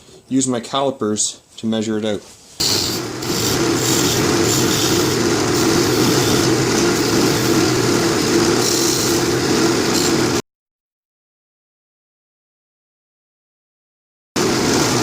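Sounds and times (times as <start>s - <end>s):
hiss of tool cutting wood: 2.6s - 10.3s
wood lathe humming: 2.6s - 10.4s.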